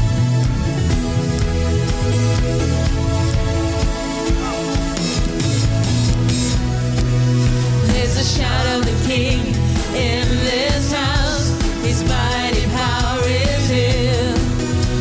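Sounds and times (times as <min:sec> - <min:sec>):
person singing with vibrato: 0:07.8 - 0:15.0.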